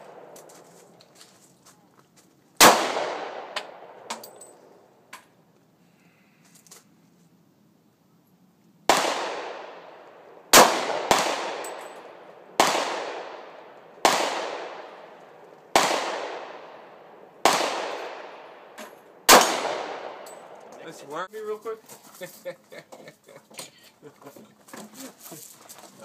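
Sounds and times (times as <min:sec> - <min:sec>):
handgun shots with echo: 0:02.6 - 0:04.4, 0:08.9 - 0:09.9, 0:10.5 - 0:15.1, 0:17.4 - 0:20.6.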